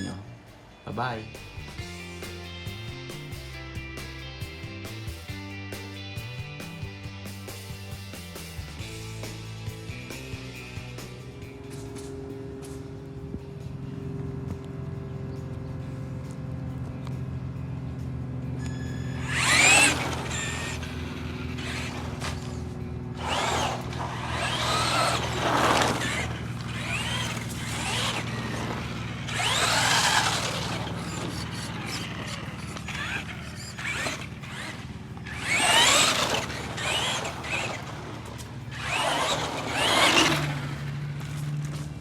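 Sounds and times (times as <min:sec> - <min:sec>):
electric motor whine revving: 0:18.5 - 0:42.0.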